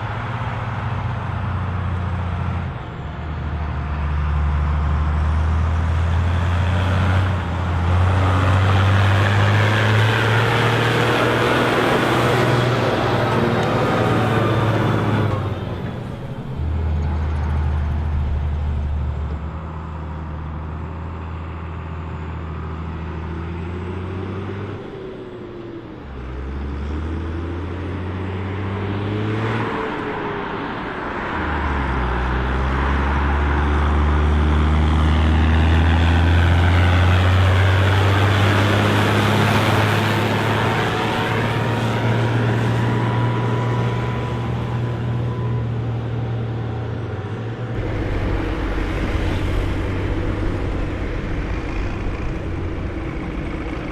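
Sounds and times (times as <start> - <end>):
tractor diesel engine running: 0.0 - 26.6, 32.4 - 53.9.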